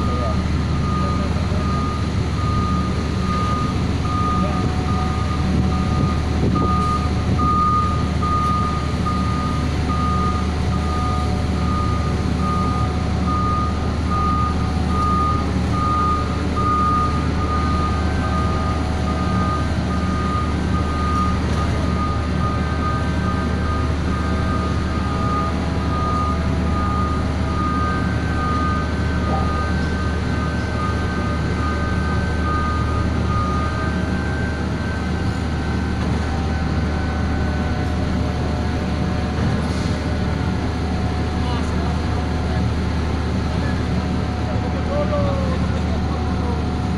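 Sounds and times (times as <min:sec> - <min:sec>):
electronic warning beeper: 0:00.0 - 0:35.4
heavy machine engine running: 0:00.0 - 0:46.9.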